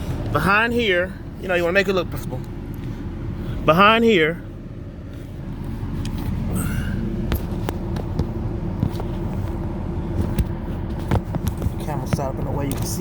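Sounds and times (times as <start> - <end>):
steady low hum: 0.0 - 13.0
light clicks and rustles: 5.1 - 6.6, 7.2 - 13.0.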